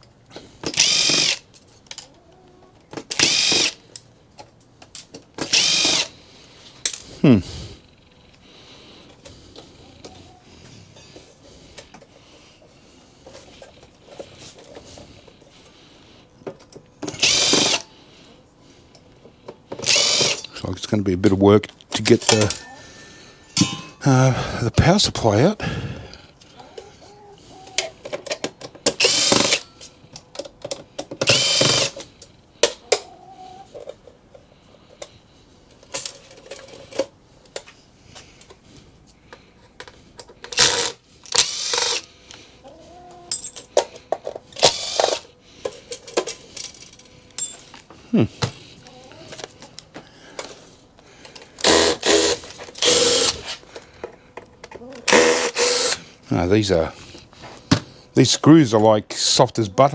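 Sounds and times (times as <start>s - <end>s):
cordless drill whirring: 0.7s - 1.4s, 3.1s - 3.8s, 5.4s - 6.1s, 17.1s - 17.8s, 19.8s - 20.4s, 29.0s - 29.6s, 31.2s - 32.0s, 40.6s - 42.1s, 44.6s - 45.3s, 51.6s - 53.6s, 55.1s - 56.1s.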